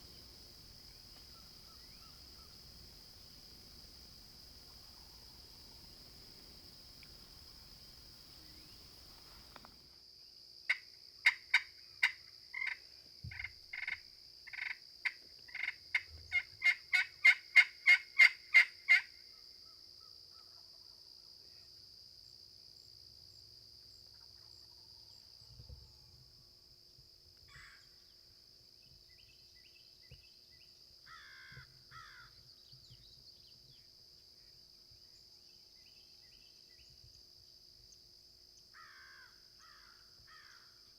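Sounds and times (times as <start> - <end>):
insects droning: 0.0 - 40.9.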